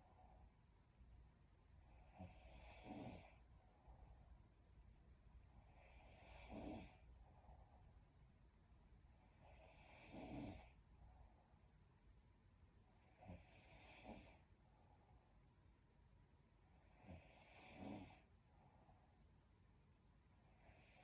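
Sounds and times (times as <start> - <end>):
woman snoring faintly: 2.0 - 3.4, 5.7 - 7.1, 9.4 - 10.8, 13.2 - 14.4, 16.9 - 18.3.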